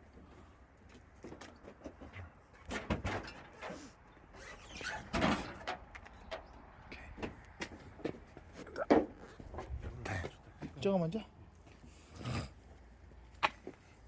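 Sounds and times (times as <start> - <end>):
tractor tires knocking and scraping: 0.0 - 11.0.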